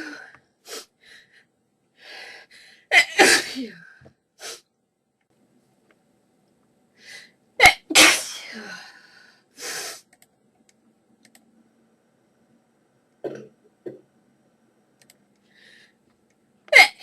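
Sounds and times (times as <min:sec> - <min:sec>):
person breathing: 0:00.0 - 0:02.9, 0:07.0 - 0:07.4, 0:08.5 - 0:10.1, 0:15.4 - 0:16.0
person sneezing: 0:07.6 - 0:08.8, 0:16.7 - 0:17.0.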